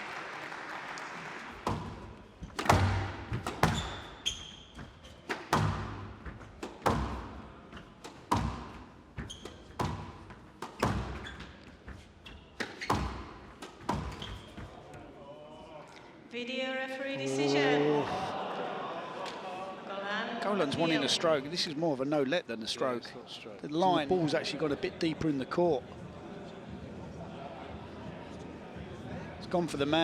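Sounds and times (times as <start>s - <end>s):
squash ball hits: 1.6s - 11.7s, 12.6s - 14.8s
shoes squeaking on floor: 2.2s - 14.9s.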